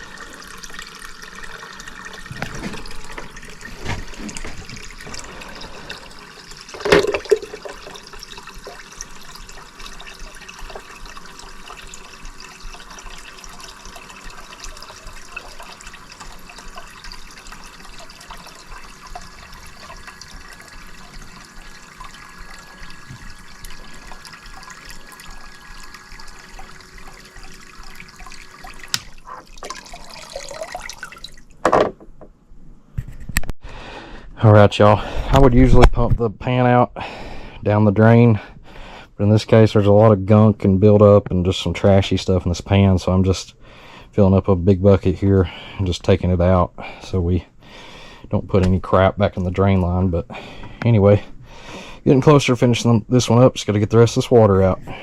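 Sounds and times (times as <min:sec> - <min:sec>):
water trickling into bucket: 0:00.0 - 0:31.6
faint steady hum: 0:00.0 - 0:55.0.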